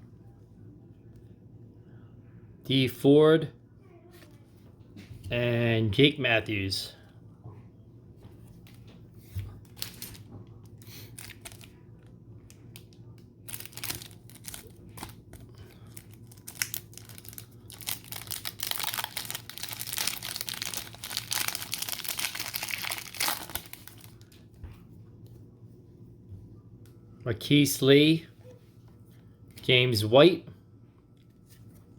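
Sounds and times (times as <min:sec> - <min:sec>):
foil wrapper tearing and crinkling: 0:11.1 - 0:11.7, 0:13.4 - 0:24.3.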